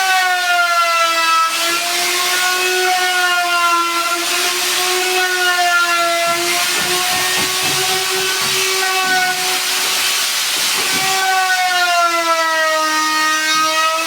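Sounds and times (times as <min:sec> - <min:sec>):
wood router whining: 0:01.5 - 0:14.0
router bit cutting wood: 0:04.2 - 0:12.1.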